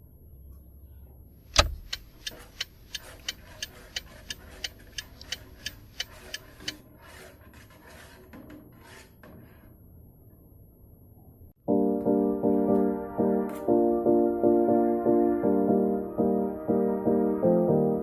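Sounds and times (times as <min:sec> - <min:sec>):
evenly spaced clicks: 0:01.5 - 0:06.8
sharp knock: 0:01.6 - 0:01.9.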